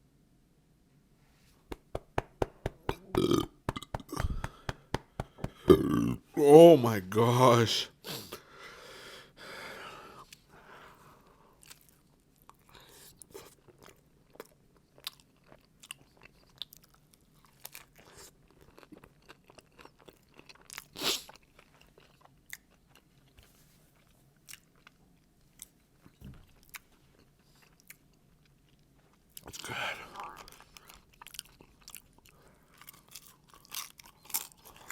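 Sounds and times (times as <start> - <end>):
person chewing crunchy food: 1.8 - 6.2, 11.6 - 34.9.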